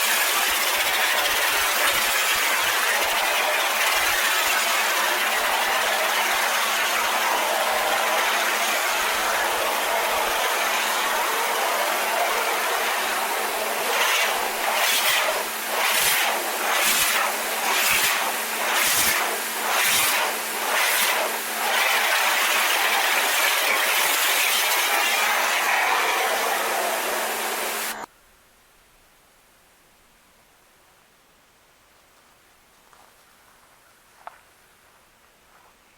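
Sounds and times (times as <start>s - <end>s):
water spraying onto tin: 0.0s - 27.9s
pressure washer motor hum: 0.0s - 28.1s.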